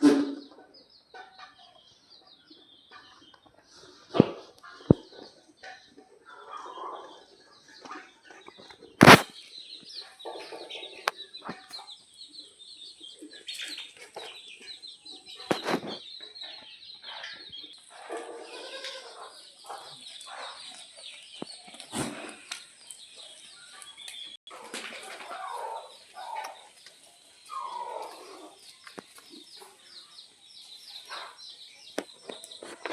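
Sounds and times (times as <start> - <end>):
chickens clucking: 0.0 - 32.9
sharp knock: 9.0 - 9.3
wings flapping: 9.0 - 9.3.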